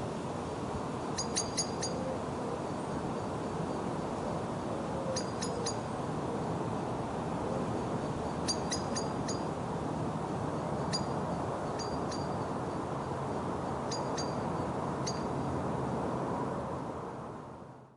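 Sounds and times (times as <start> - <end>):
steady background hiss: 0.0 - 17.9
blackbird alarm calls: 1.2 - 2.0, 5.2 - 5.8, 8.4 - 9.4, 11.8 - 12.3, 13.9 - 14.4, 15.0 - 15.3.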